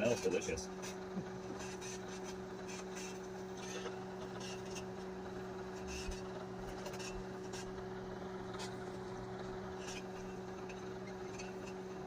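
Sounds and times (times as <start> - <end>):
microwave oven humming: 0.0 - 12.0.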